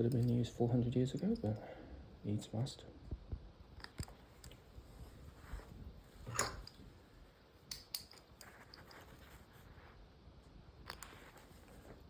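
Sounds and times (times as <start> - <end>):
rustling scrape: 4.8 - 6.4, 8.4 - 10.0.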